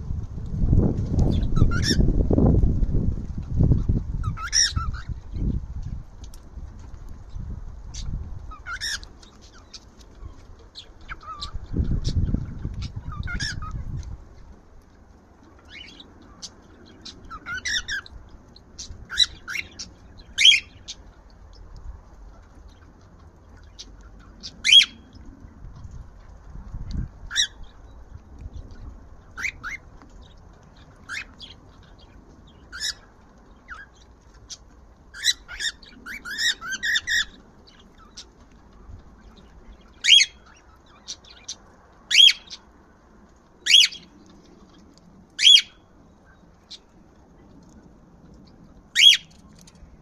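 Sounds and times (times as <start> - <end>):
cockatiel chirps and squawks: 1.3 - 2.0, 3.8 - 5.1, 8.0 - 14.0, 15.7 - 18.1, 23.7 - 25.0, 32.7 - 33.1, 33.7 - 38.3, 40.0 - 42.6, 43.7 - 44.1, 45.4 - 45.8, 49.0 - 49.3
loud cockatiel calls: 1.4 - 2.0, 4.2 - 5.1, 8.5 - 9.7, 12.8 - 13.8, 17.3 - 18.1, 24.6 - 25.0, 35.1 - 37.4, 40.0 - 41.2, 42.1 - 42.6, 43.6 - 44.1, 45.4 - 45.8, 49.0 - 49.3.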